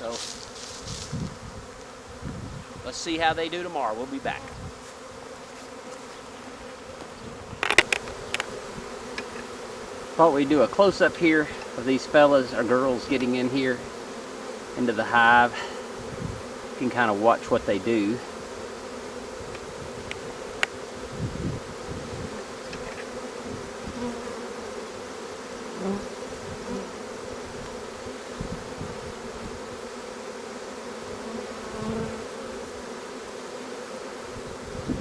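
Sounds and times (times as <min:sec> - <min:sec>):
bees buzzing: 0:00.0 - 0:35.0
sharp click: 0:07.6 - 0:08.5.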